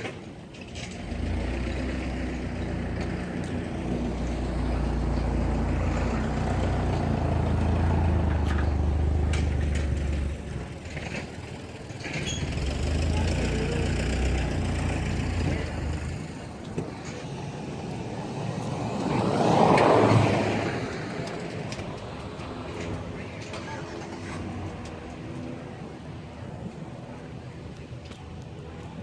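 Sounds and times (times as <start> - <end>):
engine idling: 0.7 - 18.2.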